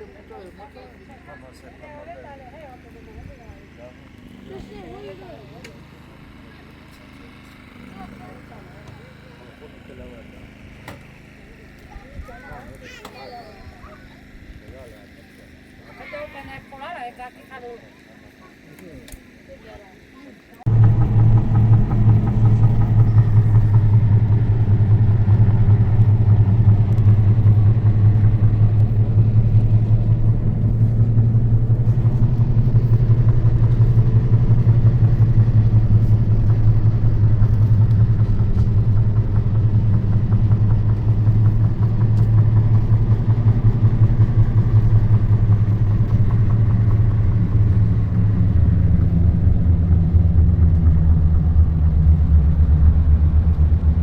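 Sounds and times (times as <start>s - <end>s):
engine droning: 0.0s - 54.0s.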